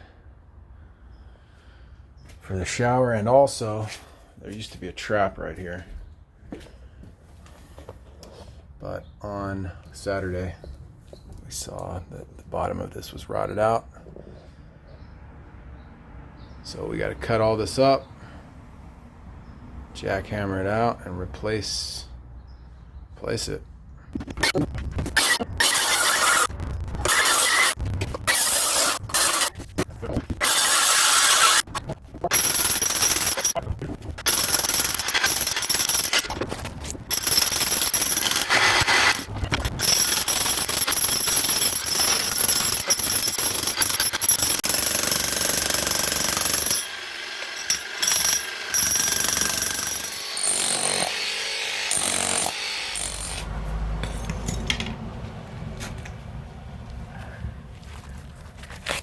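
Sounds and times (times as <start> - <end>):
jackhammer breaking concrete: 32.2 - 33.6, 34.2 - 54.3.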